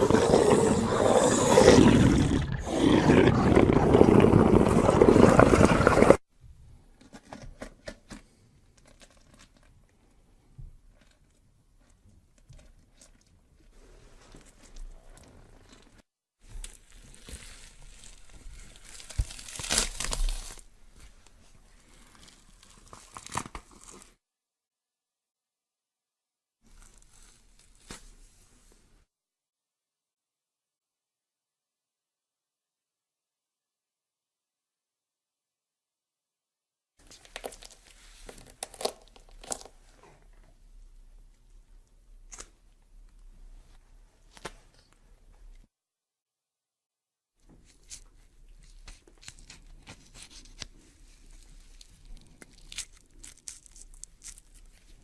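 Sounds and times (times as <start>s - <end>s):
tearing and crunching: 16.5s - 20.6s, 21.9s - 24.1s, 37.0s - 39.8s, 47.6s - 55.0s
sharp cracks and crinkling: 37.0s - 39.8s, 51.4s - 55.0s.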